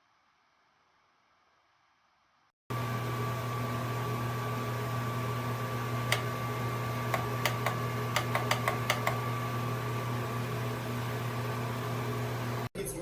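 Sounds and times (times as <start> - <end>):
heater fan humming: 2.7 - 12.7.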